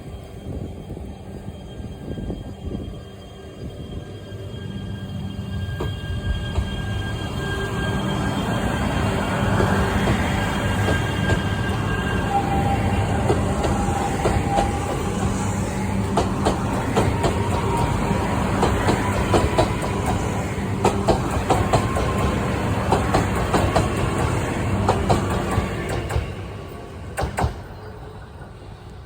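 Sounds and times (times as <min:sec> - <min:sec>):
train rumbling on rails: 0:00.0 - 0:29.0
wheels squealing: 0:00.5 - 0:26.6
clacks over rail joints: 0:18.6 - 0:26.3, 0:27.2 - 0:27.7.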